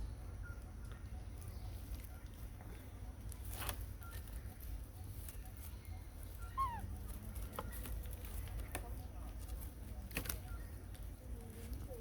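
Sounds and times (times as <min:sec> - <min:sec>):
animal squeak: 0:06.3 - 0:07.2.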